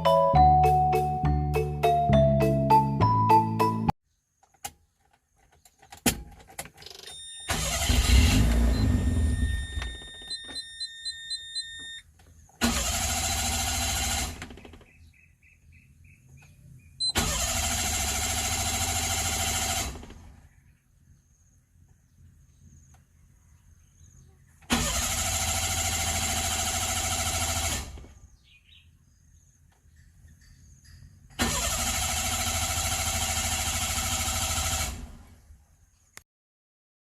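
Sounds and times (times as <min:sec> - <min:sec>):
car engine cranking: 0:05.4 - 0:15.1, 0:16.4 - 0:20.5, 0:24.7 - 0:28.2, 0:31.2 - 0:35.4.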